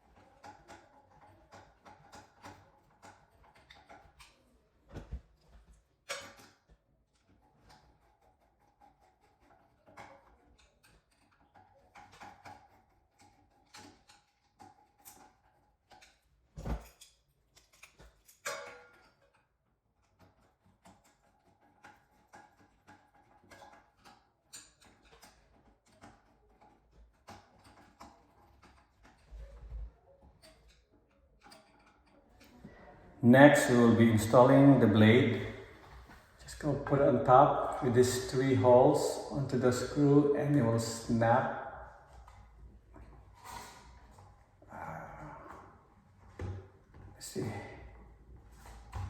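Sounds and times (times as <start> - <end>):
small metal clicks and taps: 0.1 - 4.4, 6.1 - 29.2, 30.4 - 32.5.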